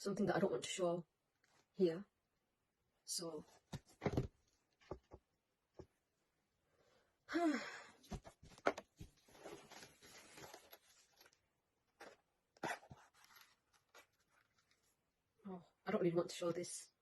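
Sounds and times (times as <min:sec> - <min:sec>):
packaging rustling: 0:08.4 - 0:15.0.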